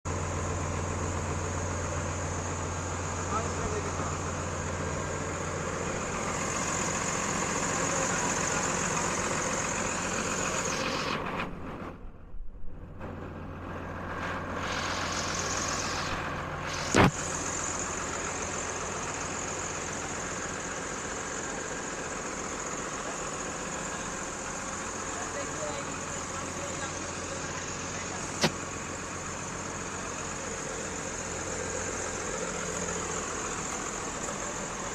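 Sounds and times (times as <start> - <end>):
heavy vehicle engine running: 0.0 - 34.9
sharp click: 16.8 - 17.2, 28.4 - 28.6.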